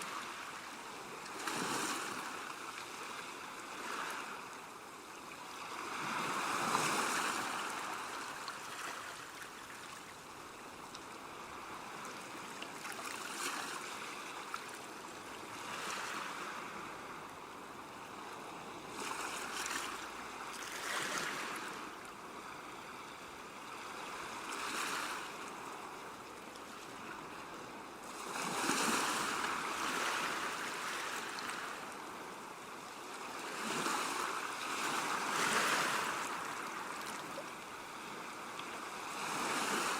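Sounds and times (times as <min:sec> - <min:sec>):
sea waves breaking on beach: 0:00.0 - 0:10.1, 0:18.0 - 0:22.5, 0:23.1 - 0:26.1, 0:26.8 - 0:39.9.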